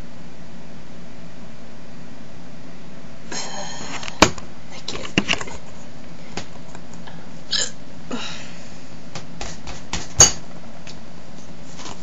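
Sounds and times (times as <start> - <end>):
person hiccuping: 7.5 - 7.8.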